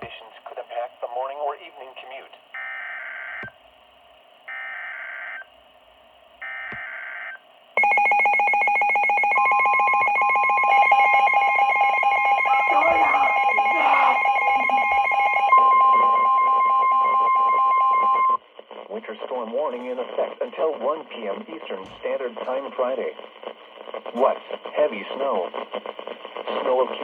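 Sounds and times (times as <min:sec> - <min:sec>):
continuous warning alarm tone: 0:02.5 - 0:03.6, 0:04.4 - 0:05.6, 0:06.4 - 0:18.4
person screaming: 0:12.5 - 0:14.7.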